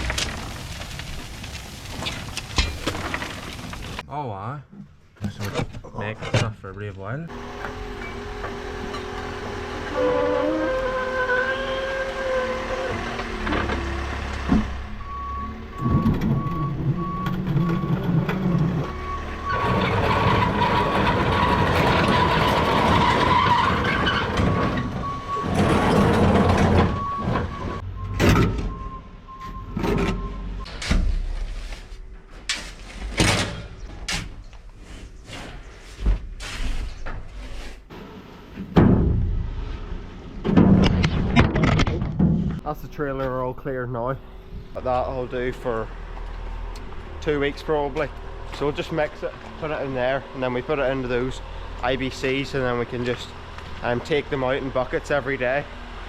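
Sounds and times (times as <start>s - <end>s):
farm vehicle engine running: 7.3s - 28.0s
reversing alarm beeping: 14.9s - 19.9s, 26.9s - 30.7s.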